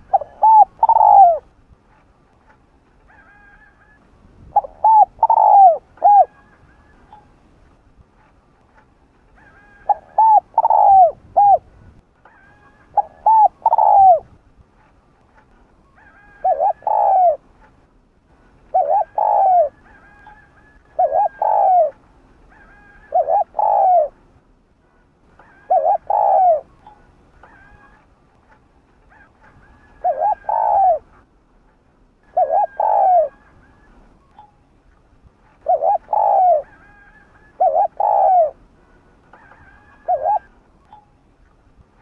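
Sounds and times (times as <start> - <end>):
dove cooing: 0.0 - 1.5, 3.1 - 7.3, 9.4 - 11.7, 12.3 - 14.3, 15.9 - 17.4, 18.7 - 24.2, 25.4 - 28.1, 29.1 - 31.1, 32.2 - 34.5, 35.5 - 40.6.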